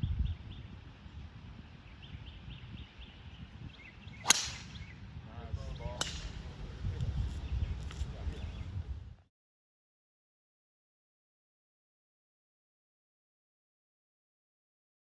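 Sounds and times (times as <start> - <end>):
golf club striking ball: 4.2 - 4.9, 6.0 - 6.5.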